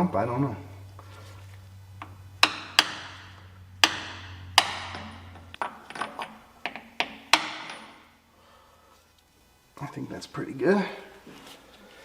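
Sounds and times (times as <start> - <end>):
hammer striking metal: 2.4 - 6.1, 6.7 - 8.1.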